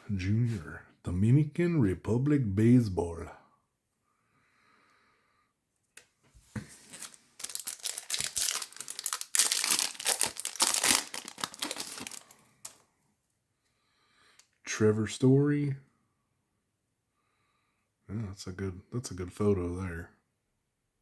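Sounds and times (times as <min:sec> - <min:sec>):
foil wrapper tearing and crinkling: 0:06.8 - 0:12.8.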